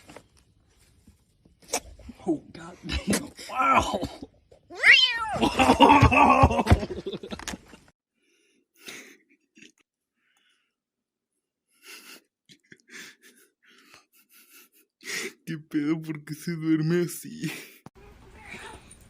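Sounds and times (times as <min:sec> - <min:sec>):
cat yowling: 0:04.7 - 0:05.4.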